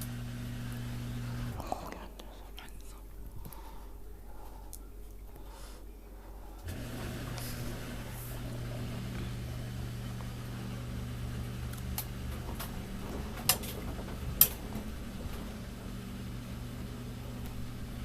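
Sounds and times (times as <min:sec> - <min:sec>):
washing machine motor hum: 0:00.0 - 0:01.7, 0:06.6 - 0:18.0
drum clicks and knocks: 0:12.3 - 0:15.7.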